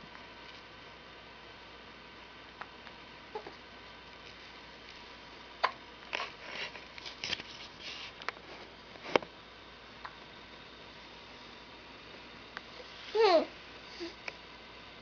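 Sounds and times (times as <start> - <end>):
soft breathy noises: 12.6 - 14.3.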